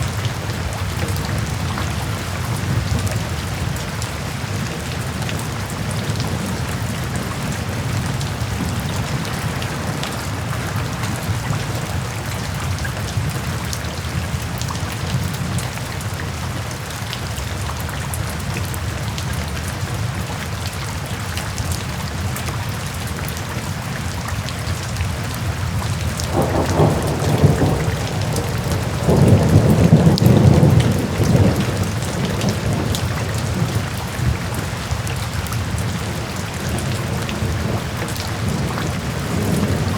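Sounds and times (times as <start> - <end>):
steady rain: 0.0 - 39.9
low thunder rolls: 26.3 - 34.9, 35.6 - 39.9.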